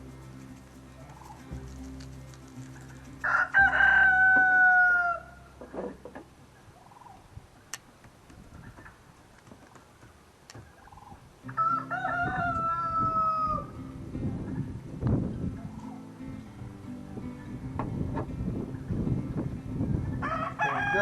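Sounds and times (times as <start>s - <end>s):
rooster crowing: 3.2s - 5.4s, 11.5s - 13.7s, 20.2s - 21.0s.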